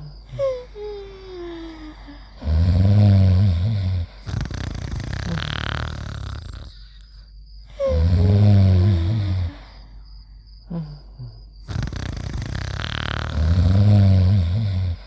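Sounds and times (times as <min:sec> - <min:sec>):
loud rumbling snore: 0:02.4 - 0:06.9, 0:07.9 - 0:09.7, 0:10.7 - 0:15.0.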